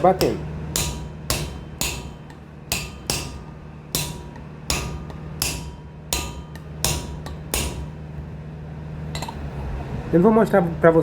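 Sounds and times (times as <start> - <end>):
hammer knocking on metal: 0.0 - 8.0
steady low hum: 0.0 - 11.0.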